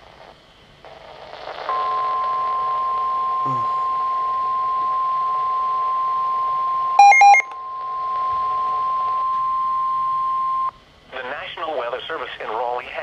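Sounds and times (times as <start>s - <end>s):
electronic beeps: 7.0s - 7.5s
steady high alarm tone: 7.0s - 7.5s.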